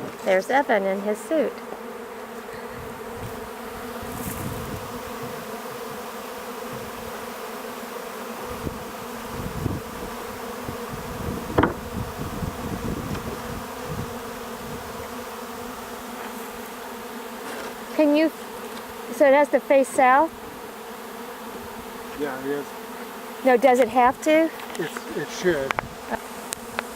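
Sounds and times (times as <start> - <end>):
honeybees buzzing: 0.0 - 26.9.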